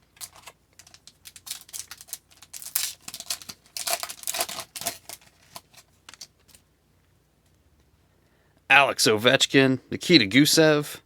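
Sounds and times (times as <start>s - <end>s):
foil pack tearing and crinkling: 0.0s - 6.6s.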